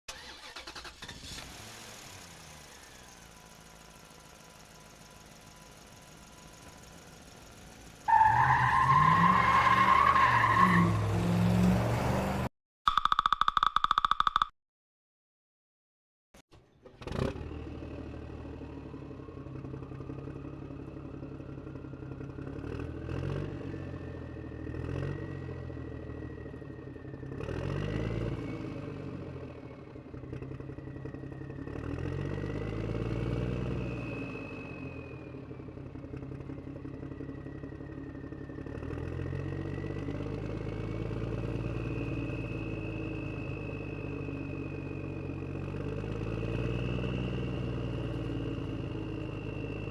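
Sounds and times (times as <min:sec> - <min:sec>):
vehicle engine revving: 0:08.0 - 0:12.5.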